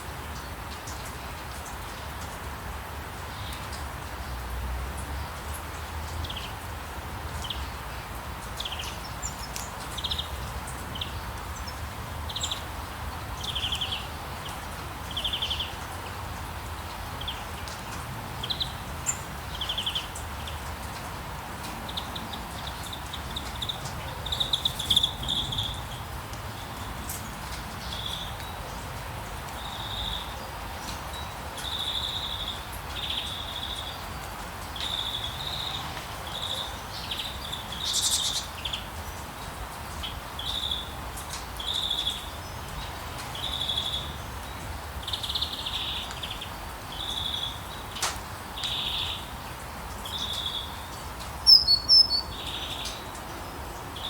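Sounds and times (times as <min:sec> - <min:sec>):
small birds chirping and trilling: 0:07.3 - 0:16.2, 0:16.8 - 0:20.9, 0:21.8 - 0:28.8, 0:34.8 - 0:39.2, 0:39.8 - 0:48.0, 0:50.0 - 0:54.0.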